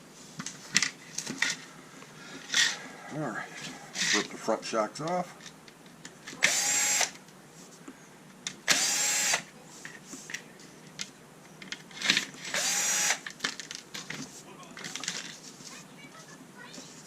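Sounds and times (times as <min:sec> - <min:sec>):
cordless screwdriver spinning: 0:12.5 - 0:13.2.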